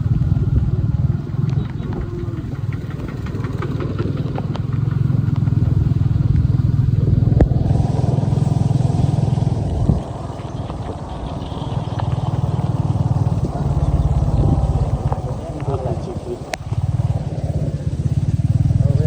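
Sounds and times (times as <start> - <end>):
motorcycle engine running: 0.0 - 19.0
faint hiss: 5.8 - 19.0.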